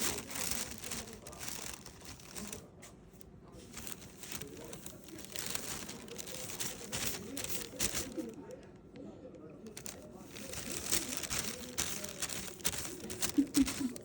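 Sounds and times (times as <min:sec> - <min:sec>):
plastic bag crinkling: 0:00.0 - 0:08.6, 0:09.7 - 0:14.0.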